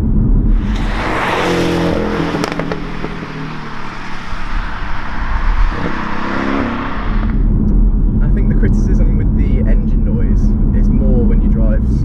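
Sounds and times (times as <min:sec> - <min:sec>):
road and wind rush: 0:00.0 - 0:08.6
car engine accelerating: 0:00.3 - 0:07.7.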